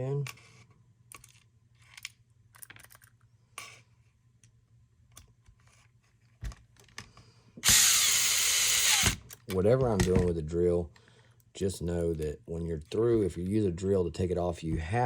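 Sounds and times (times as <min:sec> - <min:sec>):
battery drill running: 0:07.6 - 0:09.2.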